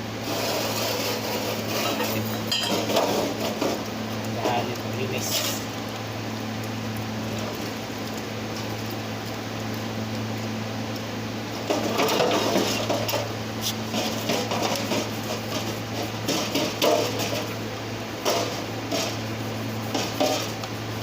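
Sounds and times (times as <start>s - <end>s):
steady low hum: 0.0s - 21.0s
tool scraping metal: 0.3s - 3.7s.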